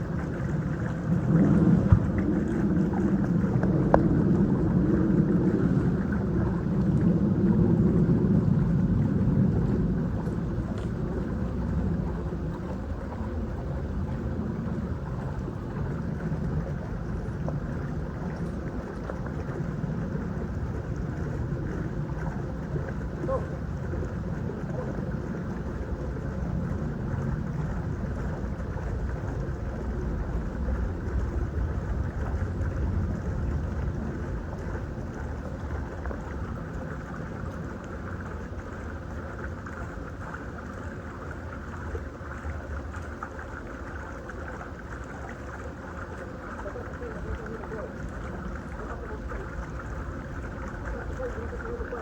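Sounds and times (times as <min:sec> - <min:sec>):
distant engine rumble: 0:00.0 - 0:41.2.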